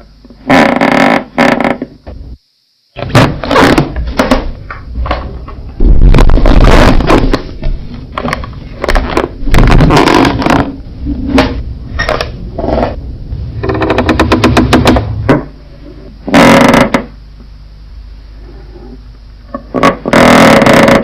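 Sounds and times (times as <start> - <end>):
wooden floorboards creaking: 0.4 - 2.2, 3.0 - 15.5, 16.3 - 17.1, 19.5 - 21.0.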